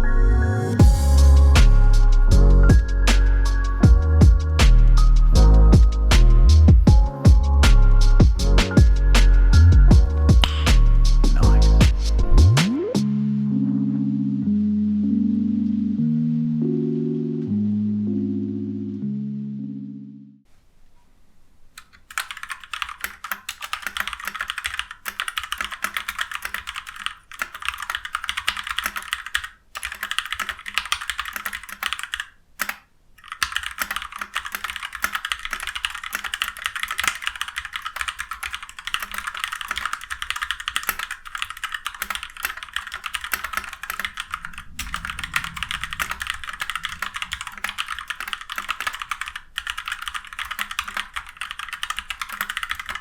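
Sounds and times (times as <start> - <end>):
fast typing on mechanical keyboard: 21.8 - 53.0.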